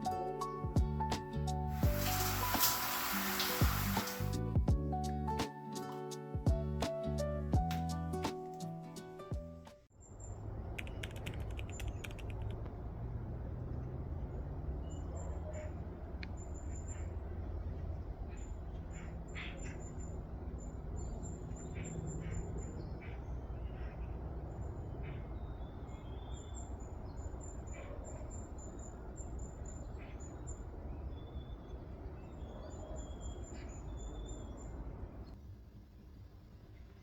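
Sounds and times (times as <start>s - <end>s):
birds chirping and trilling: 14.8s - 35.4s.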